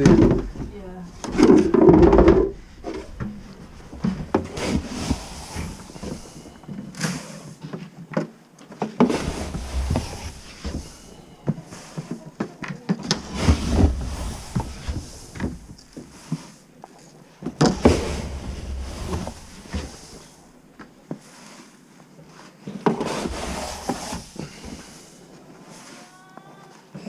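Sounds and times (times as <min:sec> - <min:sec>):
hard objects clattering and knocking: 0:00.0 - 0:07.0.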